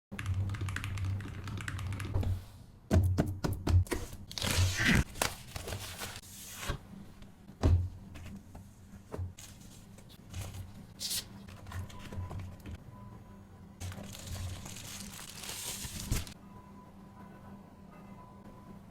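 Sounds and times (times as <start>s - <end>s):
packaging rustling and tearing: 13.8s - 16.4s.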